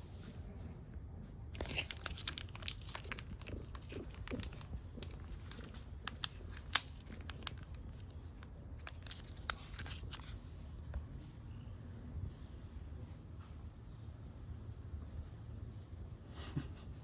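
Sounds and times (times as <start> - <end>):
cat crunching food: 1.6 - 10.5.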